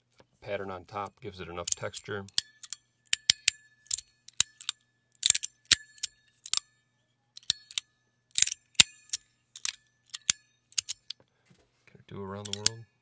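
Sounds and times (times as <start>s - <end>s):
magnetic slider metallic clicks: 1.6s - 6.7s, 7.4s - 11.2s, 12.4s - 12.8s.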